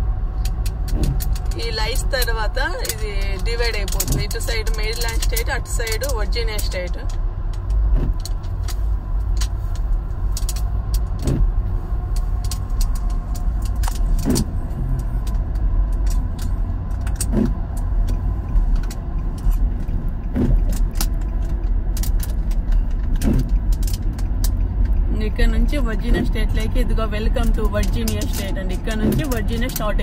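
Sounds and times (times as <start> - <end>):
road and tyre rumble: 0.0 - 30.0
light ticks: 12.0 - 30.0.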